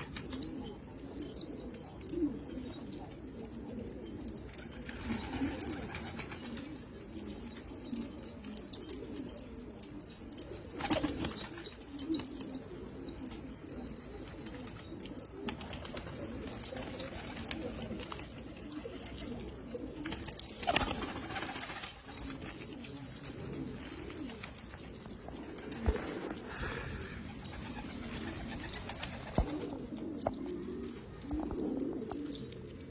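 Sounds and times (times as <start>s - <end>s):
pigeons cooing: 0.0s - 32.9s
rustling noises: 20.1s - 32.9s.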